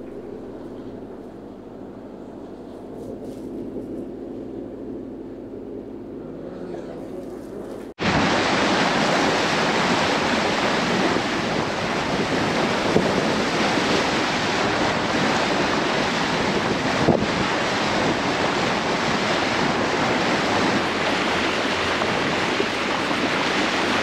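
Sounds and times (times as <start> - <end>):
boat engine humming: 0.0 - 24.0
wind buffeting microphone: 0.0 - 24.0
rush of wind and sea water: 7.5 - 24.0.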